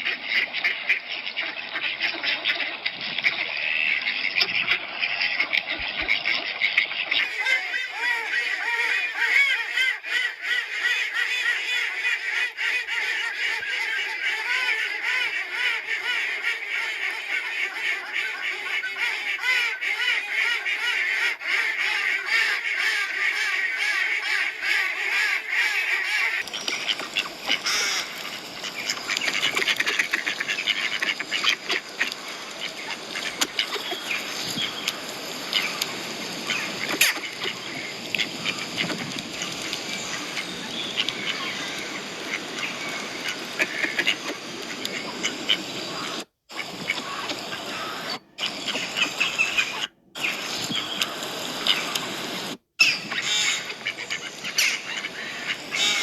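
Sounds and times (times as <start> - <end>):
ducks quacking: 0.0 - 56.0.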